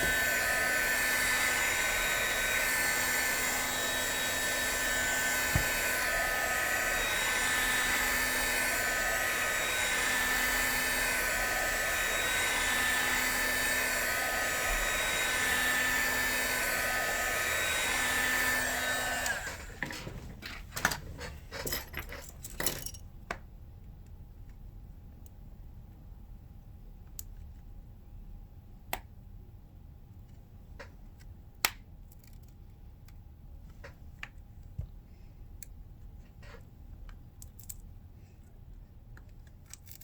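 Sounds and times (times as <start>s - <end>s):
hot-air blower whining: 0.0s - 21.7s.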